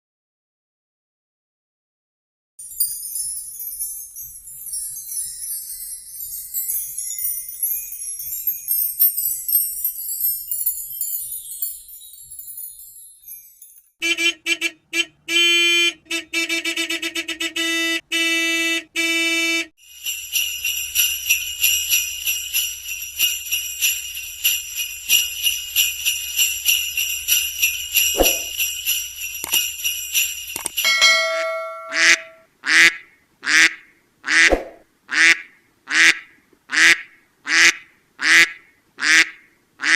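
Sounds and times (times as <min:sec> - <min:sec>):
jingling bells: 0:02.6 - 0:14.0, 0:19.8 - 0:32.4
short pitched honk-like tones: 0:14.0 - 0:19.7, 0:31.0 - 0:32.4
long high ringing tone: 0:30.8 - 0:32.4
duck-like quacking calls: 0:31.9 - 0:39.9.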